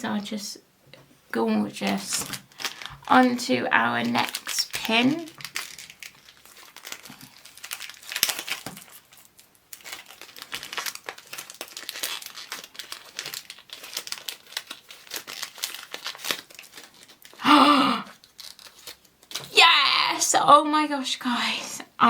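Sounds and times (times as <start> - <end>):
packaging crinkling and tearing: 1.8 - 19.8
loud vocal exclamation: 19.5 - 20.5.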